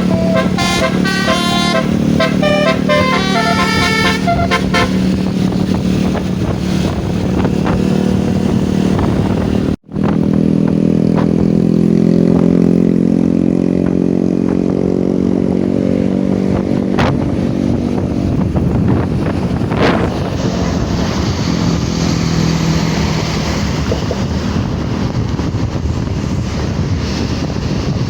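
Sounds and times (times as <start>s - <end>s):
melodic musical bus horn: 0.0s - 5.3s
vehicle engine running: 0.0s - 7.8s.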